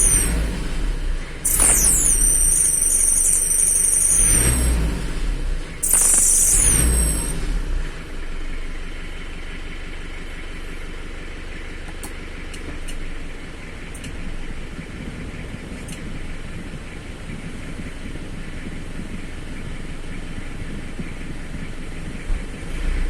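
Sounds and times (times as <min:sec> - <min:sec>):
high-pitched whistle: 0:00.0 - 0:00.6, 0:01.4 - 0:08.0
engine revving: 0:00.0 - 0:10.8
engine idling: 0:00.0 - 0:23.0.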